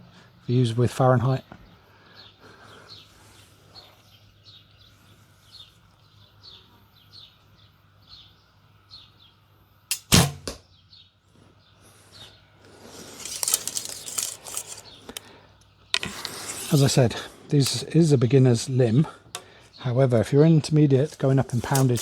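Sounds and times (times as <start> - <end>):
rustling: 12.6 - 17.9, 21.0 - 22.0.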